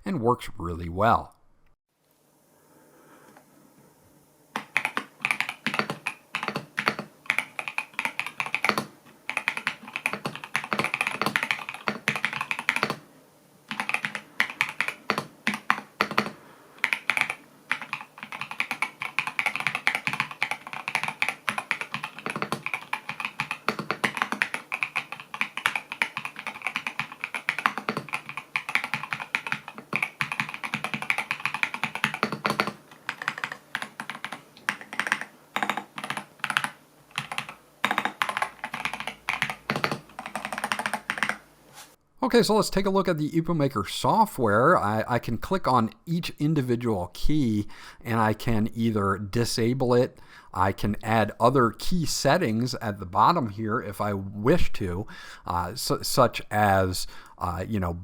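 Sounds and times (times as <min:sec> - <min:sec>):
mechanical keyboard typing: 0:04.6 - 0:13.0, 0:13.7 - 0:41.4.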